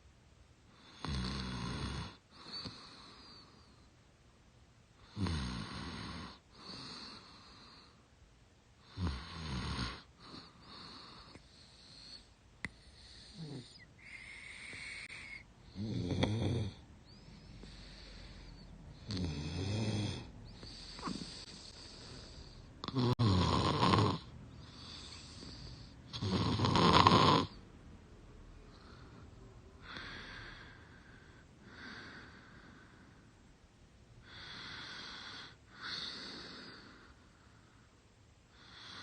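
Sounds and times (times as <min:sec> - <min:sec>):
woman snoring: 0:00.8 - 0:03.5, 0:05.0 - 0:08.0, 0:08.8 - 0:18.4, 0:19.0 - 0:27.6, 0:34.2 - 0:37.1
soft breathing: 0:02.2 - 0:04.1, 0:05.9 - 0:08.2, 0:09.9 - 0:16.0, 0:16.7 - 0:22.8, 0:24.5 - 0:26.2, 0:28.4 - 0:33.5, 0:34.2 - 0:39.0.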